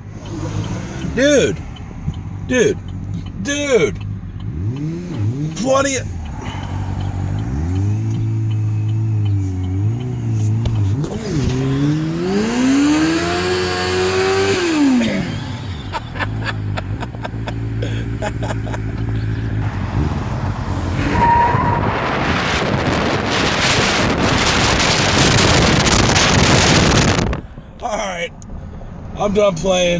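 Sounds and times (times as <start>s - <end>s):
vehicle engine revving: 0.0s - 27.5s
rushing noise: 19.6s - 27.4s.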